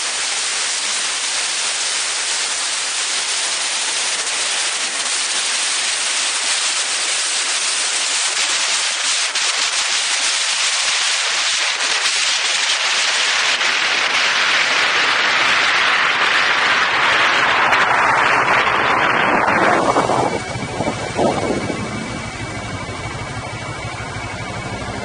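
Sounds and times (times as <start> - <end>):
wind on microphone: 13.9 - 25.0.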